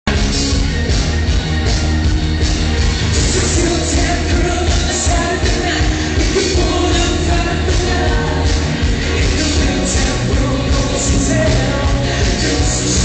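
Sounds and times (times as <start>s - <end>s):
loud dance music with heavy bass: 0.1s - 13.0s.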